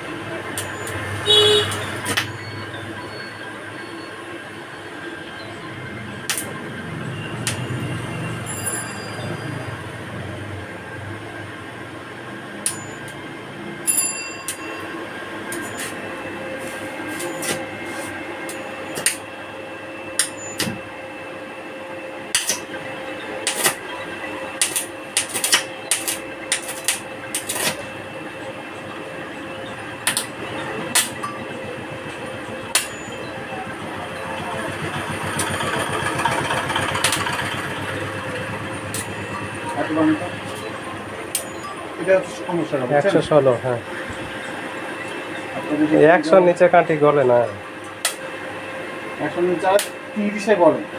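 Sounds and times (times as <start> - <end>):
welding crackling pops: 0.5 - 2.4, 6.3 - 6.6, 7.4 - 7.9, 18.5 - 19.2, 22.3 - 22.8, 23.4 - 23.9, 24.6 - 28.0, 30.0 - 31.2, 36.8 - 37.5, 38.8 - 39.2, 48.0 - 48.3, 49.8 - 50.0
welding sizzling hiss: 15.5 - 19.2, 23.4 - 23.9, 24.5 - 28.0.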